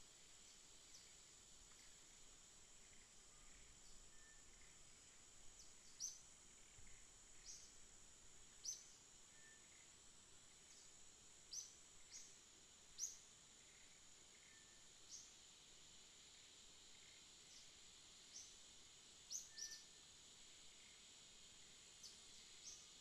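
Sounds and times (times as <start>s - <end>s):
high-pitched insect drone: 0.4s - 15.4s, 16.2s - 23.0s.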